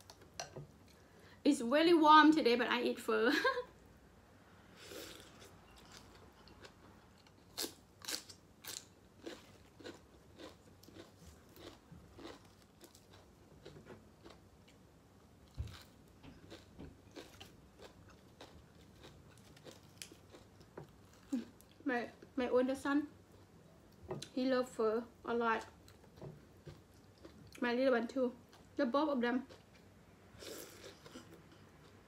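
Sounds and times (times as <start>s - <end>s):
person chewing and biting: 5.1s - 14.8s, 15.6s - 21.7s.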